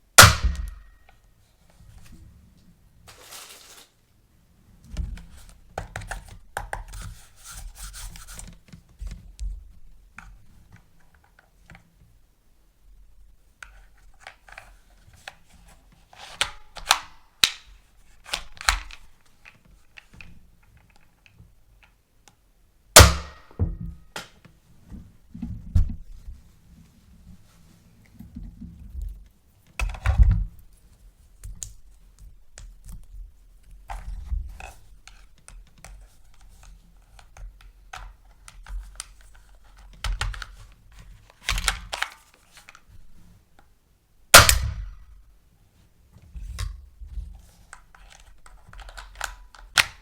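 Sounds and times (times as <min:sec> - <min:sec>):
loud sharp plastic snap: 0:00.1 - 0:01.1, 0:44.4 - 0:45.2.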